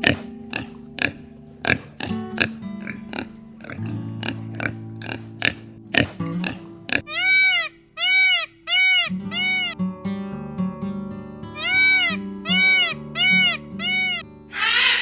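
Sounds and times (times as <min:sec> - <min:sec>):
background music: 0:00.0 - 0:15.0
animal calls rising and falling: 0:07.1 - 0:09.8, 0:11.6 - 0:15.0
short pulsed animal call: 0:07.1 - 0:09.8, 0:11.6 - 0:15.0.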